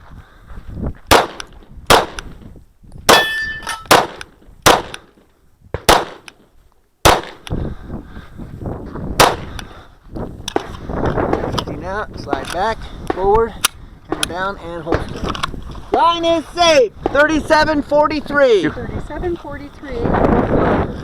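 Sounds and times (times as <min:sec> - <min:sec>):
pistol shots: 0:01.1 - 0:02.2, 0:03.1 - 0:05.0, 0:05.8 - 0:06.3, 0:07.0 - 0:07.4, 0:09.2 - 0:09.5
short metallic ring: 0:03.2 - 0:03.9.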